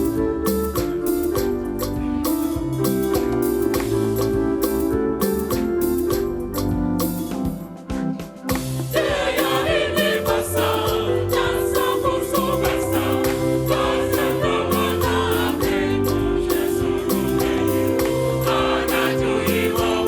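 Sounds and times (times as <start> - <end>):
band with bass drums keyboard: 0.0 - 20.0
gospel choir singing: 8.8 - 20.0.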